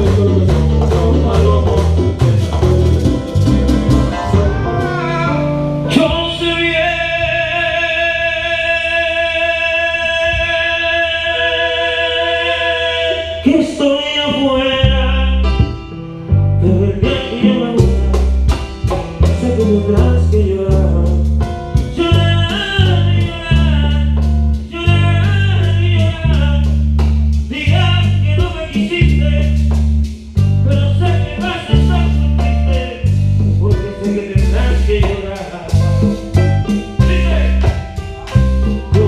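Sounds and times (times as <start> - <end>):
lead voice singing: 0.0 - 3.1, 4.1 - 15.8, 16.6 - 26.7, 27.5 - 29.6, 30.6 - 39.0
percussion strikes: 0.0 - 8.0, 16.9 - 39.0
live band playing: 0.0 - 8.9, 11.4 - 39.0
bass line: 0.0 - 39.0.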